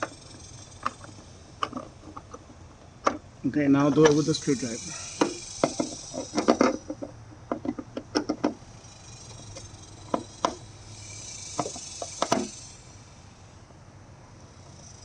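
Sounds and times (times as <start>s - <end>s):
screwdriver clicks and scrapes: 3.9s - 8.6s, 11.6s - 12.6s.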